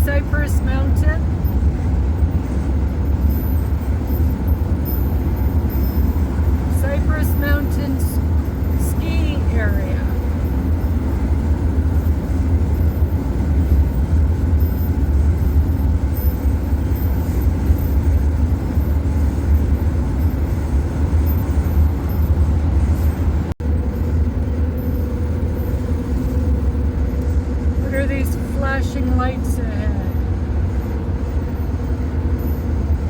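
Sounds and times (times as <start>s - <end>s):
vehicle road and engine rumble: 0.0s - 33.0s.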